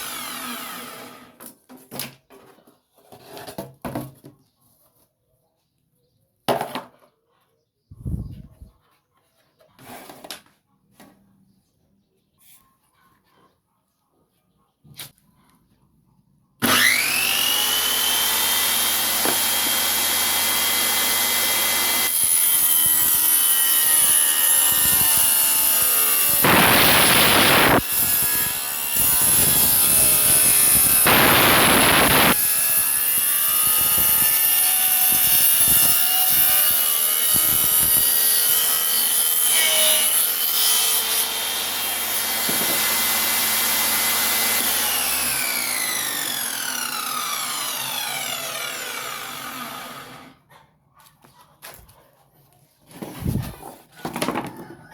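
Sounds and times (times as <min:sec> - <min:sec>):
table saw whining: 0:00.0 - 0:01.4, 0:16.6 - 0:50.4
saw cutting wood: 0:00.0 - 0:01.5, 0:16.6 - 0:50.4.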